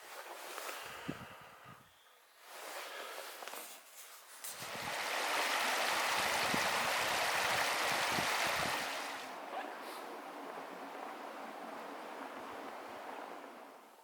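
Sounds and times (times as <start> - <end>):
stream water rushing: 4.5 - 14.0.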